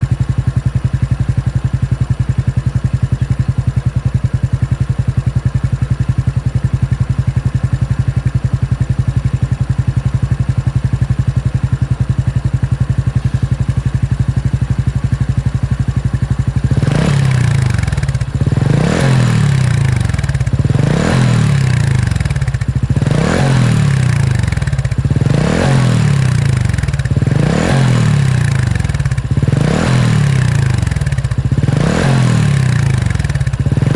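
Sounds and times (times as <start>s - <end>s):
motorcycle engine idling and revving: 0.0s - 33.9s.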